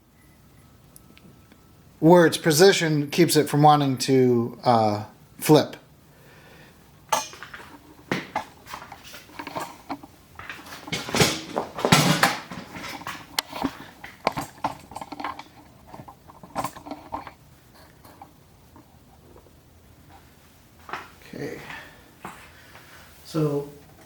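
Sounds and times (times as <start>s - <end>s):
metal tools clinking and rattling: 7.1s - 19.0s
metal scraping clatter: 7.1s - 19.5s.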